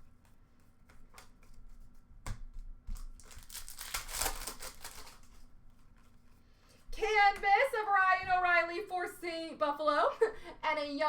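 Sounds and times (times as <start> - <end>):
wrapper crinkling and tearing: 2.9 - 5.5.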